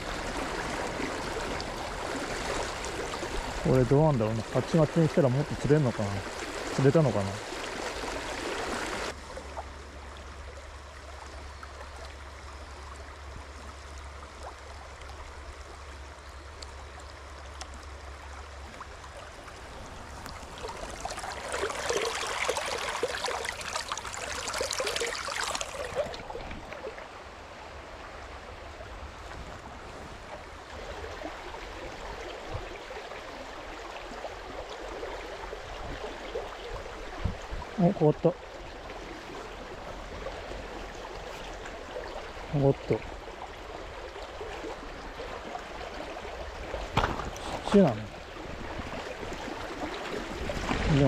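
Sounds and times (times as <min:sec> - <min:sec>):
river water rushing over stones: 0:00.0 - 0:09.4, 0:17.8 - 0:27.9, 0:38.4 - 0:51.0.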